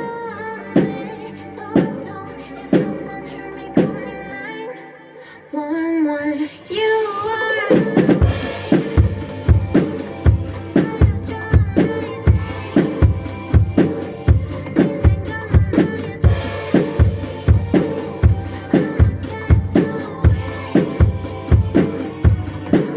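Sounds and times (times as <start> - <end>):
pop song playing: 0.0 - 22.9
cymbal strokes: 8.2 - 11.0.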